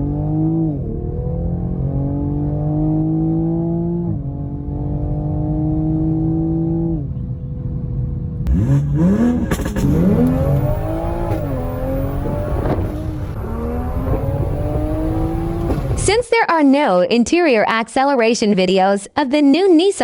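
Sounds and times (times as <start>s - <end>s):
sports car engine revving: 0.0s - 7.2s, 8.4s - 16.1s.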